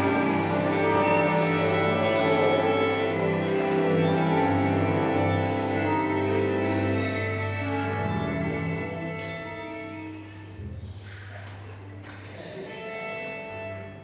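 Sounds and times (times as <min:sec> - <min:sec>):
slow sustained instrumental chords: 0:00.0 - 0:14.0.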